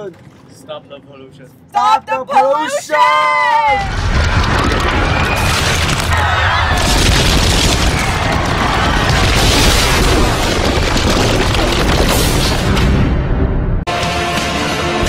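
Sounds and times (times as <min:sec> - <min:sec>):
deep rumbling boom: 0:03.8 - 0:13.9
music: 0:12.6 - 0:15.0.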